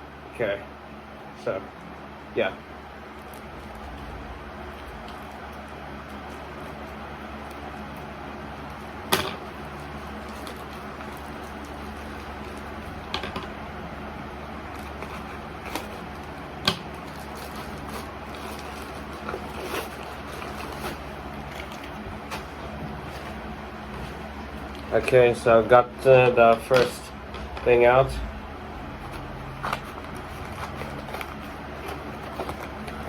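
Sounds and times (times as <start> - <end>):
steady background hum: 0.0 - 33.0
package being unpacked: 14.7 - 23.4, 29.0 - 33.0.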